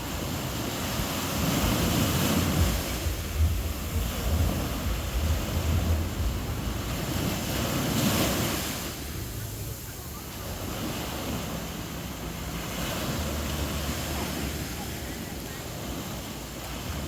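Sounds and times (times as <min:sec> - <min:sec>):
waves washing onto beach: 0:00.0 - 0:17.0
wind buffeting microphone: 0:00.0 - 0:17.0.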